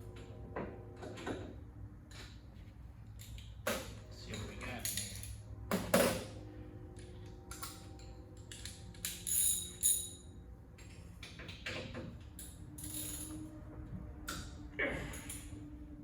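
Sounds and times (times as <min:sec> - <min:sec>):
metal tools clinking: 0:04.2 - 0:05.4, 0:07.6 - 0:10.3, 0:12.4 - 0:13.5.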